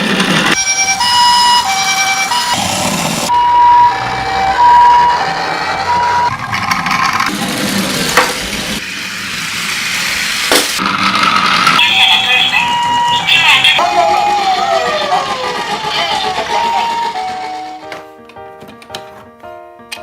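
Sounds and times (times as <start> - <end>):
two-tone ambulance siren: 0.5 - 6.4, 11.8 - 18.0.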